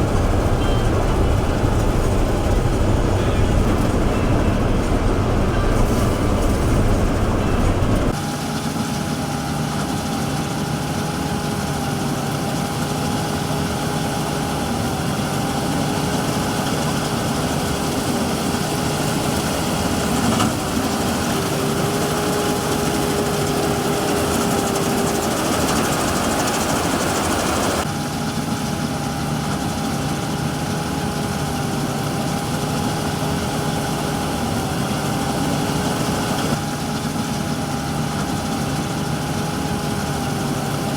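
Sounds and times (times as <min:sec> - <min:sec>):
high steady whine: 0:00.0 - 0:08.2
combine harvester engine drone: 0:00.0 - 0:40.9.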